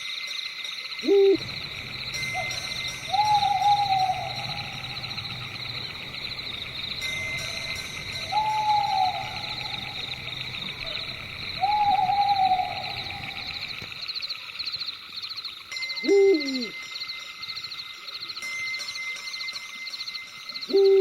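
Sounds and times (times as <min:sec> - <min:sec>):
crickets chirping: 0:00.0 - 0:21.0
owl hoots: 0:01.0 - 0:13.9, 0:16.1 - 0:16.7, 0:20.7 - 0:21.0
wavering call falling in pitch: 0:02.1 - 0:05.8, 0:07.0 - 0:13.8.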